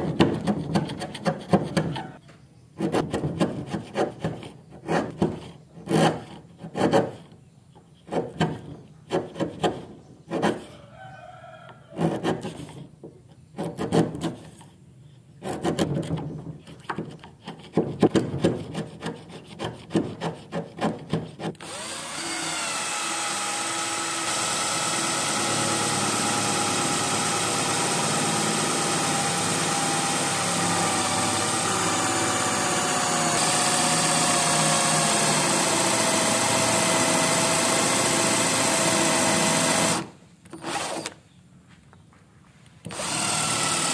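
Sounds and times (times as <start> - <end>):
hand tool scraping wood: 0.0 - 2.2, 2.8 - 10.8, 11.8 - 14.8, 15.4 - 41.2
small power tool whining: 21.6 - 41.2, 42.9 - 43.9.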